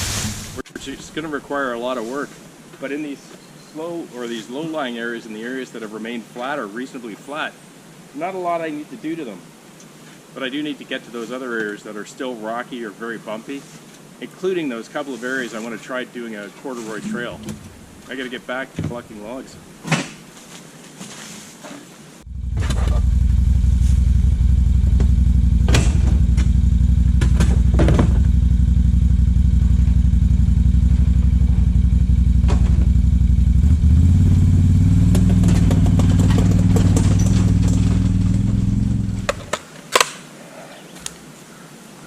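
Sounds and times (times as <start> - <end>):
tractor diesel engine running: 17.0 - 19.7, 22.2 - 39.5
knocks and clunks: 17.0 - 20.2, 24.8 - 28.4, 30.9 - 33.2, 34.3 - 39.6.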